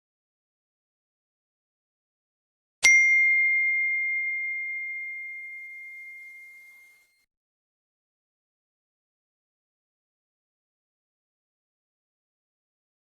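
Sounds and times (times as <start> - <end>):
notification chime ding: 2.8 - 7.2.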